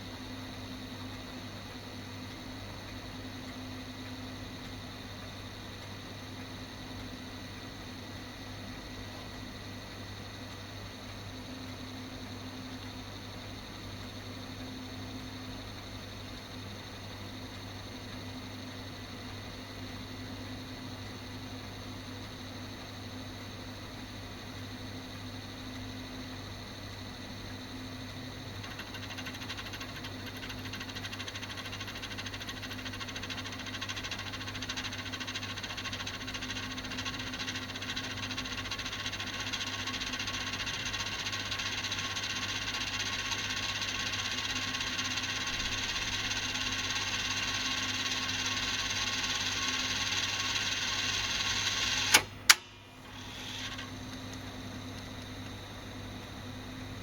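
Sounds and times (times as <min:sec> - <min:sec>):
tape deck rasping whir: 0:28.6 - 0:55.2
sharp mechanical clicks: 0:28.6 - 0:55.6.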